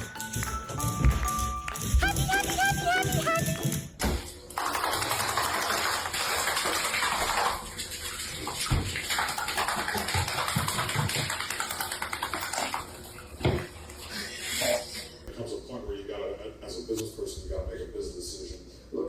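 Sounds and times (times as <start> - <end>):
running water splashing: 4.6 - 14.4.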